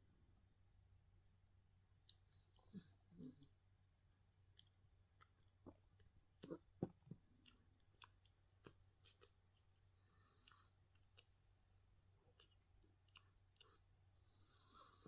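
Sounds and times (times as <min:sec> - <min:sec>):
puppy mouth clicking and smacking: 0:04.5 - 0:09.9.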